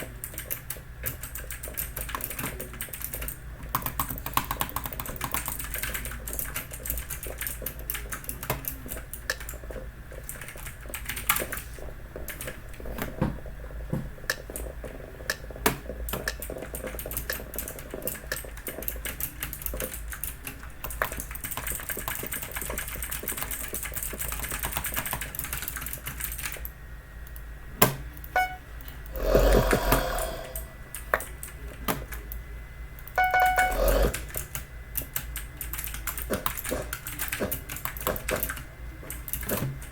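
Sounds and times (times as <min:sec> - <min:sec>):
clicky mechanical keyboard typing: 0:00.0 - 0:11.7, 0:14.3 - 0:26.7, 0:33.0 - 0:39.9
short pitched tone: 0:28.4 - 0:28.7, 0:33.2 - 0:34.1.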